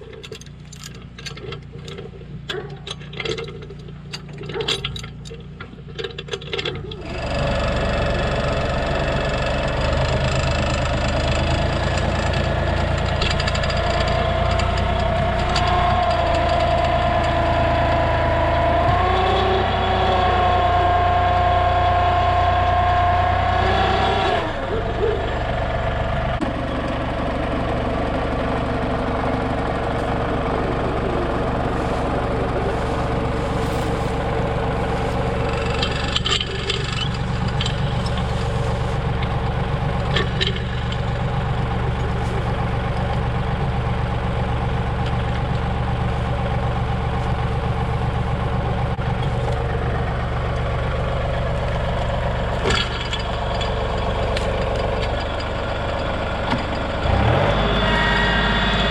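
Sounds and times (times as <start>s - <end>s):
knocks and clanks of log chain: 0.0s - 7.0s, 9.2s - 18.0s, 29.8s - 43.8s, 51.2s - 56.9s
tractor engine running: 0.0s - 58.9s.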